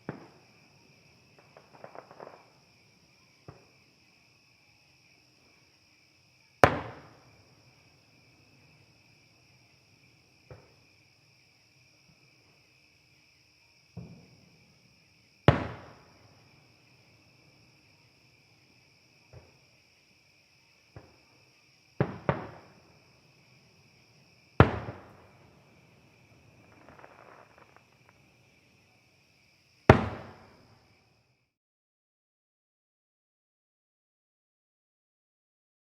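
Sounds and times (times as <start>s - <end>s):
distant fireworks bangs: 0.0s - 0.6s, 1.2s - 2.6s, 6.6s - 7.4s, 15.4s - 16.3s, 22.0s - 22.9s, 24.6s - 28.2s, 29.9s - 30.7s
fireworks crackling: 0.0s - 2.8s, 22.0s - 22.9s, 24.6s - 28.4s, 29.9s - 30.7s
insects chirring: 0.0s - 31.5s.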